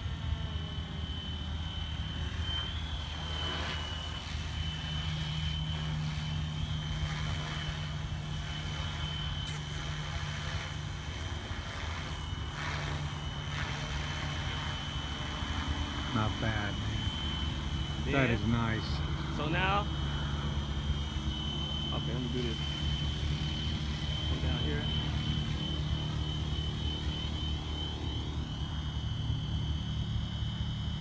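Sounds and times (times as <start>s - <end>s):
high motor whine: 0.0s - 31.0s
rotor blades buzzing: 0.0s - 31.0s.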